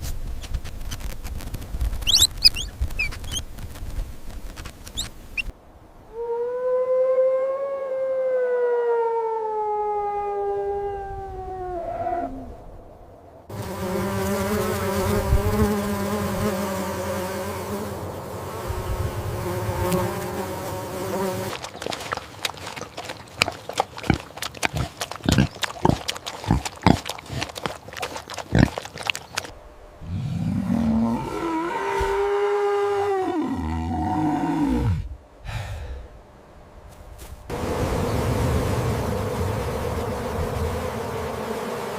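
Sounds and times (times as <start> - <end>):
animal call slowly falling: 2.0 - 3.4, 6.1 - 12.7, 21.4 - 35.9
dense buzzing: 37.4 - 41.9.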